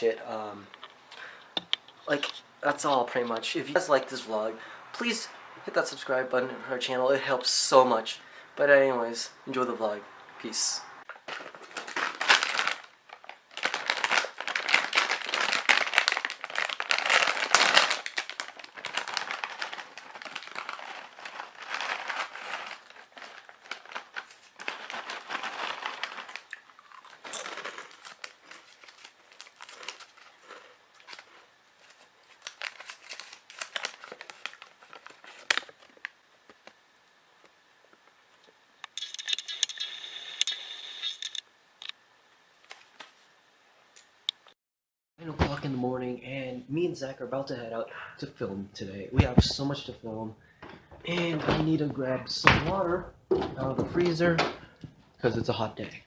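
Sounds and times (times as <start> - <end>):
crinkling and rustling: 11.1 - 36.8.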